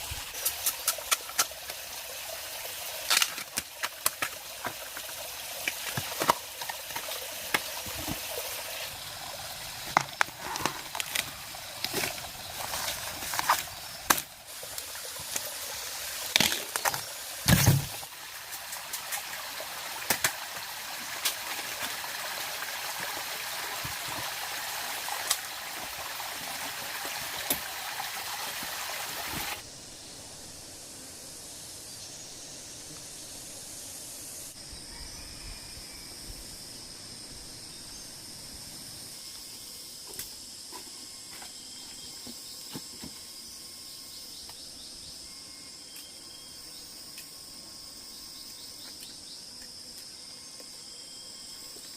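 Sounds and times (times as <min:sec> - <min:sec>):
rushing water-like hiss: 0:00.0 - 0:34.6
insects droning: 0:00.0 - 0:51.9.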